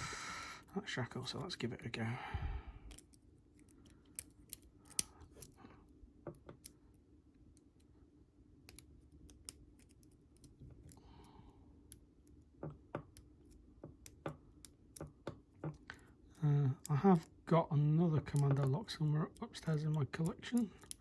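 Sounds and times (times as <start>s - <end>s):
faint steady hum: 0.0s - 21.0s
lock picks clicking in padlock: 2.9s - 5.6s.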